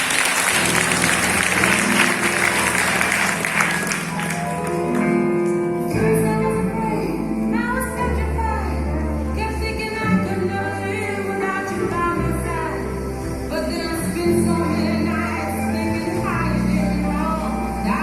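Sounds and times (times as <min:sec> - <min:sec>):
applause: 0:00.0 - 0:05.3.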